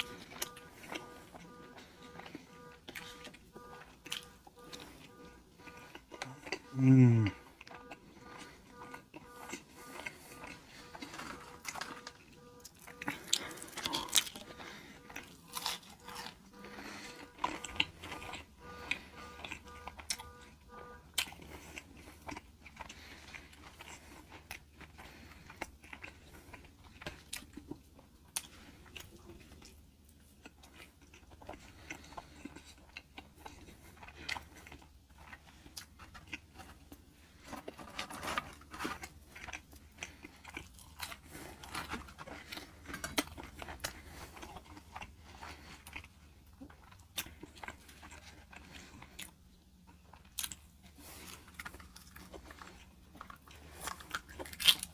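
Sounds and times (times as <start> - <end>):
steady low hum: 0.0 - 27.5
chewing and crunching food: 0.0 - 54.9.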